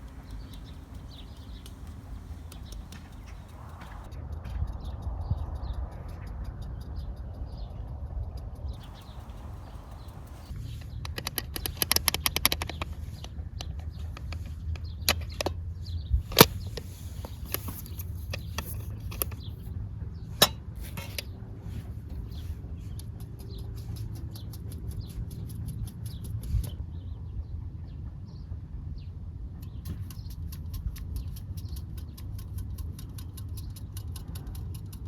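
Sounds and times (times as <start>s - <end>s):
sharp pops: 0.0s - 4.1s
wood fire crackling: 0.0s - 4.1s, 8.8s - 10.5s
low steady rumble: 0.0s - 11.8s.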